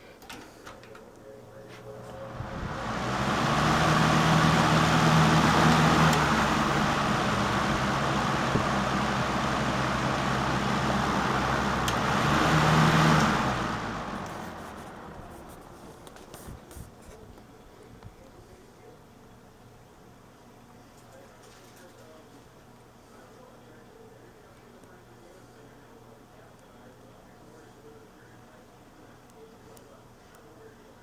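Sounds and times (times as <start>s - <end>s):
electric fan running: 0.0s - 20.6s.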